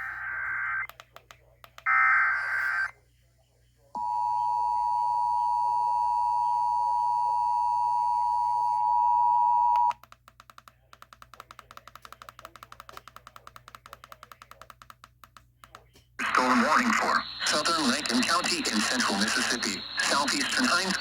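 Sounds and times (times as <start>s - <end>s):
faint rapid clicking: 9.9s - 15.8s.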